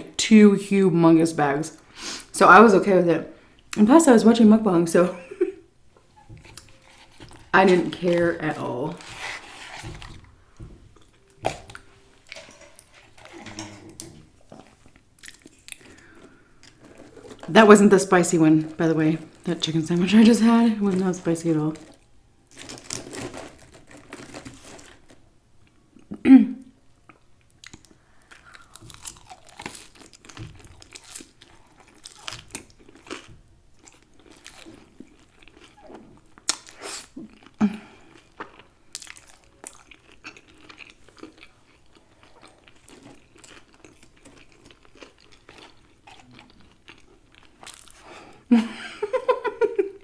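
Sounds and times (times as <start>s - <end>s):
chewing crispy fried chicken: 6.2s - 10.4s, 11.6s - 25.8s, 27.0s - 48.4s.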